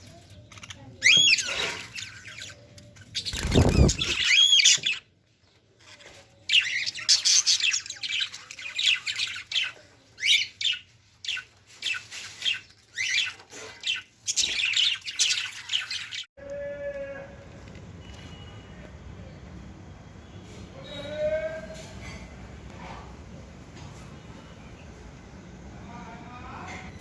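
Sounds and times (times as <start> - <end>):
parrot chicks squawking: 0.3 - 5.1, 5.9 - 16.3.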